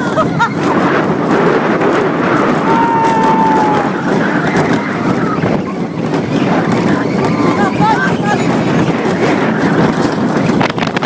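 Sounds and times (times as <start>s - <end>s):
roller coaster train rumbling: 0.0s - 11.0s
wind rushing over microphone: 0.0s - 11.0s.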